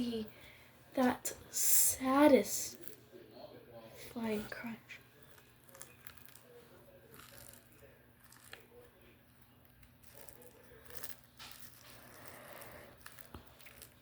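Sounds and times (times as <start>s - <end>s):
slime crunching and crackling: 4.2s - 14.0s.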